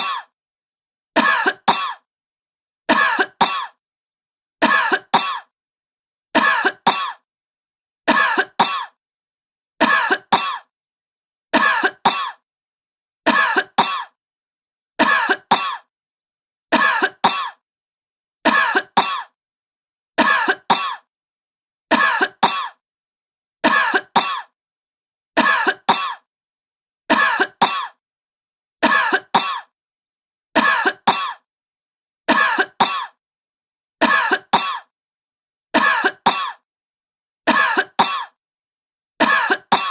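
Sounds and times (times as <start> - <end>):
woman coughing: 1.2 - 2.1, 2.9 - 3.8, 4.6 - 5.5, 6.4 - 7.2, 8.1 - 9.0, 9.8 - 10.7, 11.6 - 12.4, 13.3 - 14.2, 15.0 - 15.9, 16.8 - 17.6, 18.5 - 19.4, 20.2 - 21.1, 21.9 - 22.8, 23.7 - 24.6, 25.4 - 26.3, 27.1 - 28.0, 28.8 - 29.8, 30.6 - 31.5, 32.3 - 33.2, 34.0 - 34.9, 35.8 - 36.6, 37.5 - 38.4, 39.2 - 39.9.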